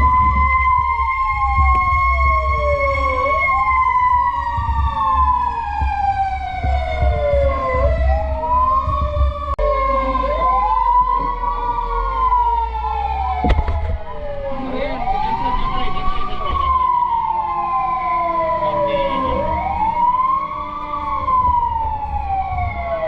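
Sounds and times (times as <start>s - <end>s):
fire truck sirens wailing: 0.0s - 23.0s
steady low rumble: 13.4s - 14.6s.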